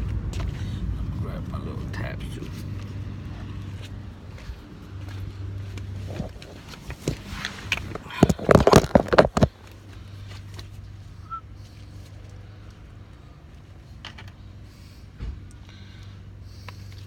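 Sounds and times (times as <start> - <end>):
low steady hum: 0.0 - 17.0
small hard parts rattling: 6.0 - 10.8
dense run of loud clicks: 6.2 - 9.6.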